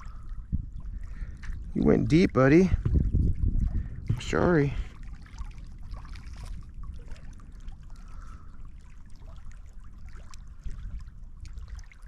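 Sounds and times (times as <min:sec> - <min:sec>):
water trickling at shoreline: 0:00.0 - 0:12.0
wind rumbling on microphone: 0:00.0 - 0:12.0.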